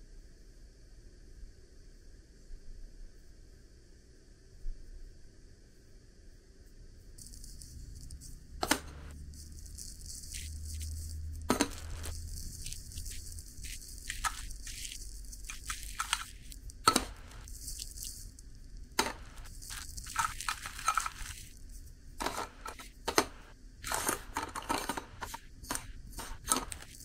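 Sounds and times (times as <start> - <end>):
crinkling and tearing: 7.2 - 24.4, 25.0 - 27.0.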